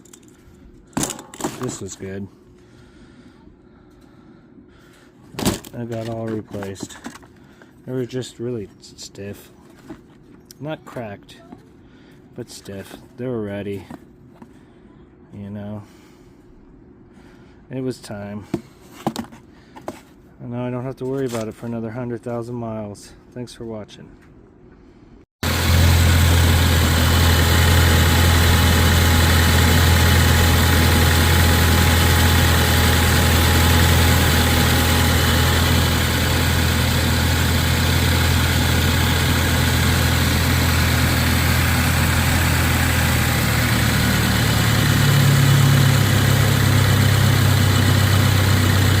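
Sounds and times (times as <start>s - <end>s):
car engine idling: 25.4s - 49.0s.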